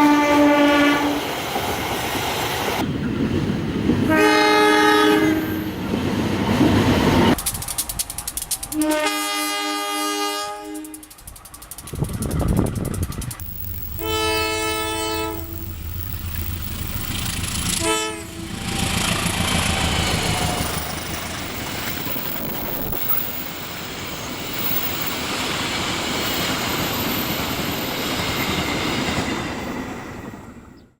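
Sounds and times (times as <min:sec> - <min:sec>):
locomotive air horn blasts: 0:00.0 - 0:01.2, 0:04.1 - 0:05.6, 0:08.8 - 0:11.1, 0:13.5 - 0:16.0, 0:17.2 - 0:20.8
train wheels on rails: 0:00.0 - 0:30.8
locomotive engine rumble: 0:10.9 - 0:23.7.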